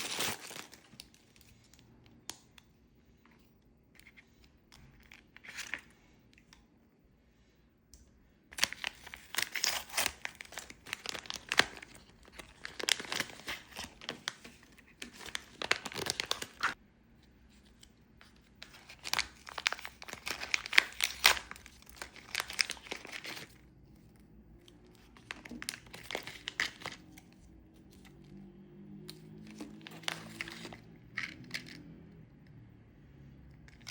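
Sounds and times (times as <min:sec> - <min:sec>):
plastic wrapping crinkling and tearing: 0:00.0 - 0:01.6, 0:04.9 - 0:05.9, 0:08.6 - 0:16.8, 0:18.5 - 0:23.6, 0:24.9 - 0:28.3, 0:29.1 - 0:31.8.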